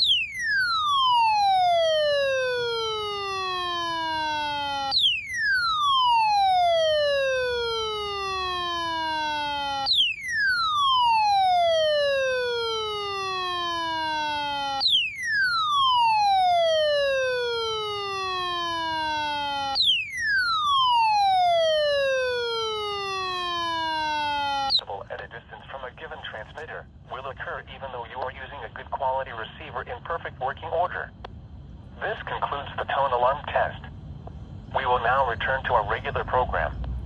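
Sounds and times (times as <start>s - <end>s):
electronic alert siren wail: 0.0s - 24.8s.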